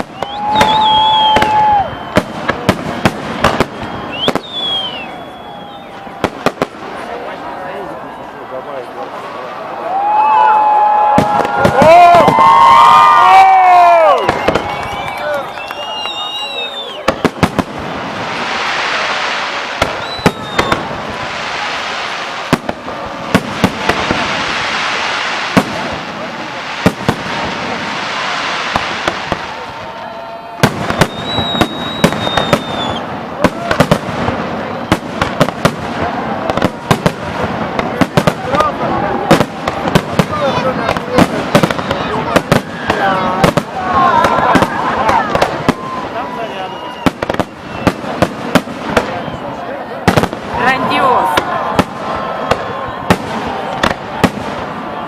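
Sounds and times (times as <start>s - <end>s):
fireworks whistling: 0.0s - 8.4s, 9.4s - 55.0s
continuous hiss: 0.0s - 43.8s
fireworks bangs and crackling: 0.0s - 55.0s.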